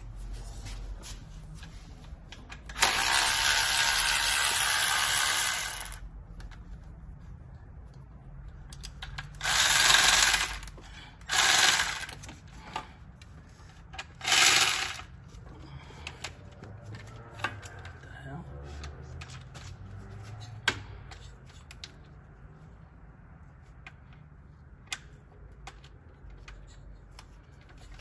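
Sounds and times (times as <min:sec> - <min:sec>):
power tool running: 0:02.8 - 0:06.0, 0:09.4 - 0:10.7, 0:11.3 - 0:12.2, 0:14.2 - 0:15.1.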